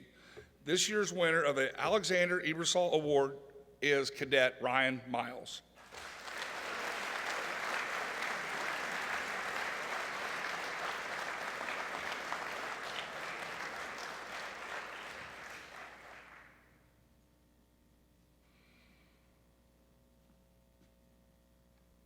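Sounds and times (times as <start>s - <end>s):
audience applauding: 5.8s - 16.6s.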